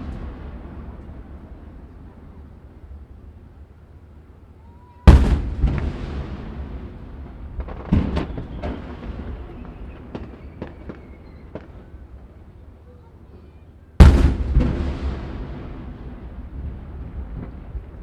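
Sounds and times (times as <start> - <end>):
firework pops and crackles: 5.1 - 12.5.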